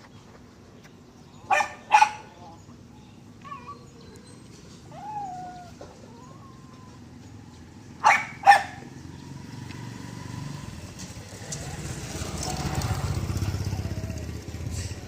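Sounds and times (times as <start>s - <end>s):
dog barking: 1.5s - 2.3s, 8.0s - 8.9s
dog whining: 3.4s - 7.2s.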